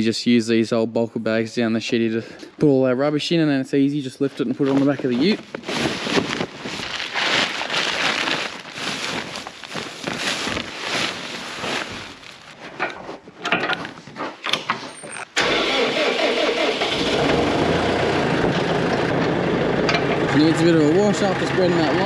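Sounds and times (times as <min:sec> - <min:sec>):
irregular rustling: 0:04.2 - 0:15.1
vehicle engine running: 0:16.8 - 0:22.0.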